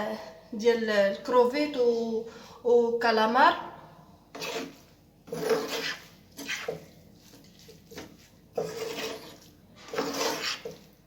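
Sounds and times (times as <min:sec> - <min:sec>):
spoon stirring noodles in liquid: 0:04.4 - 0:11.0.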